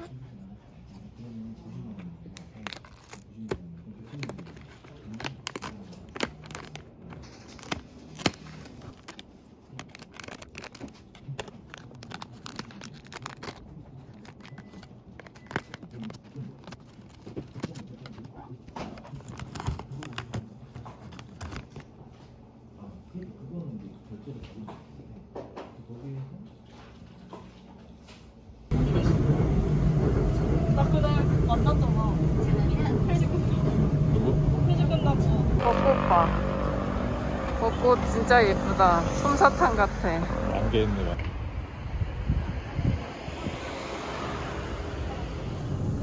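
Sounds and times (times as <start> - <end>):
crinkling handling noises: 0.7 - 22.8.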